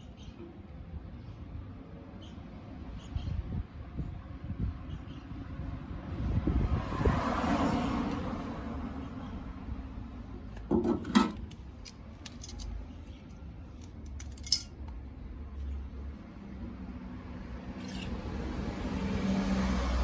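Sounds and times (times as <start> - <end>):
light metallic clinks and taps: 11.4 - 13.2, 13.8 - 15.0
ringing metal clink: 14.2 - 14.7.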